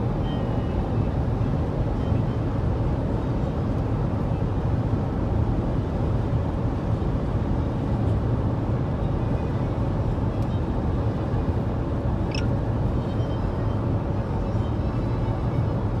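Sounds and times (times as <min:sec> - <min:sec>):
faint high squeak: 0:12.3 - 0:12.5.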